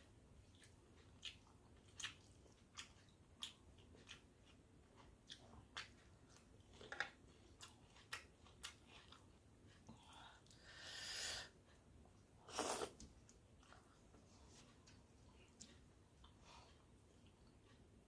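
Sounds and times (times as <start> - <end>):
chewing with wet mouth clicks: 0.4 - 9.9.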